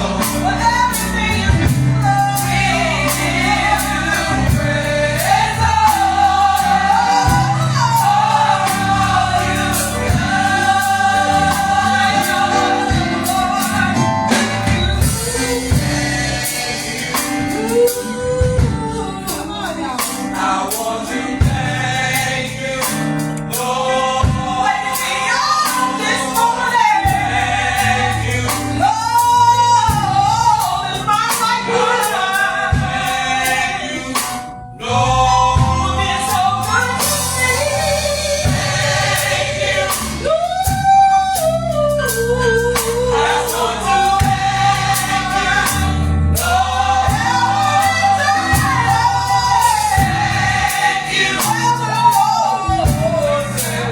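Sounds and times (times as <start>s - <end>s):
bass and drums: 0.0s - 53.9s
gospel choir singing: 0.0s - 53.9s.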